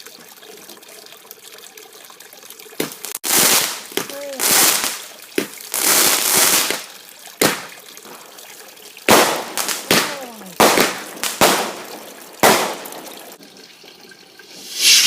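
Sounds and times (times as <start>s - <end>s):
fireworks bangs and cracks: 2.8s - 7.8s, 9.1s - 13.3s
firework hiss: 3.1s - 5.1s, 14.6s - 15.0s.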